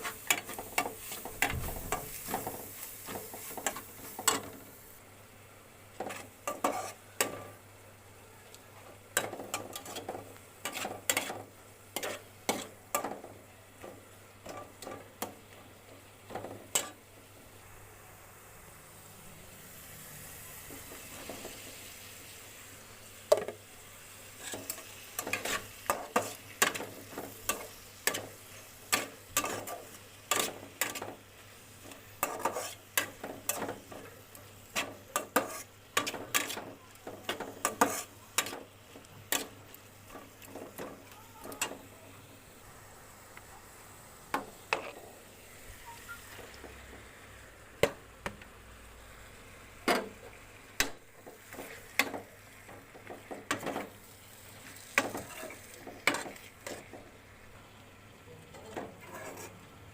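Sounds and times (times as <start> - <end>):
faint frying sizzle: 0.0 - 59.9
utensil scraping cooking pot: 6.0 - 7.6, 9.2 - 13.3, 16.3 - 17.0, 24.4 - 31.2, 31.8 - 41.8, 55.0 - 57.0, 58.7 - 59.6.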